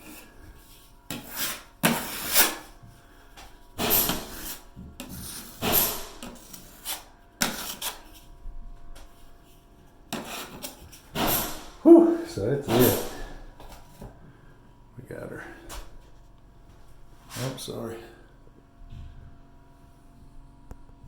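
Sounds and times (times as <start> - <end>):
drywall knife scraping compound: 0.0 - 2.8, 3.8 - 8.4, 9.4 - 13.5.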